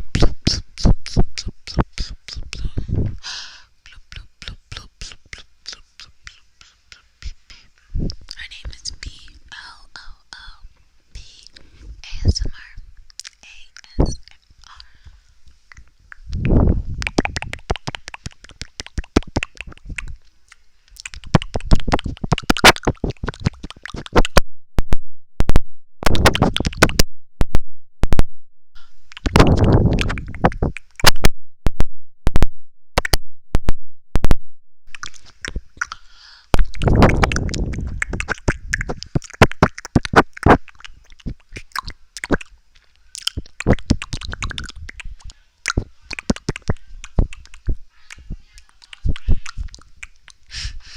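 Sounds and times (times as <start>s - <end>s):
tongue clicks: 0.1s - 2.8s, 3.8s - 9.4s, 12.3s - 24.4s, 26.1s - 27.0s, 28.8s - 31.2s, 34.9s - 50.5s
lip smacks: 3.9s - 9.4s, 13.0s - 24.4s, 26.1s - 27.0s, 28.8s - 31.2s, 34.9s - 50.6s.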